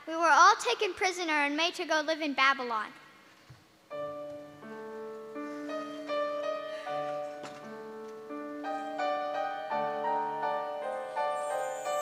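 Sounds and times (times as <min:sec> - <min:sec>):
gentle piano music: 0:03.9 - 0:12.0.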